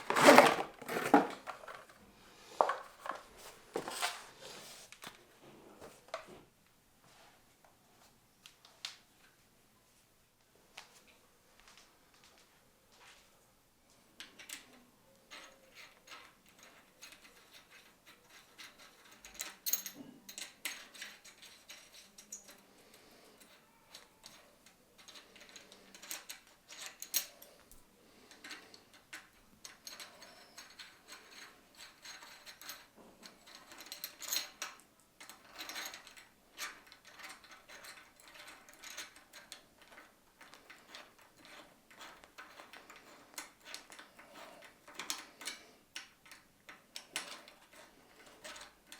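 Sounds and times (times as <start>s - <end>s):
tools and metal parts clicking: 14.3s - 48.9s.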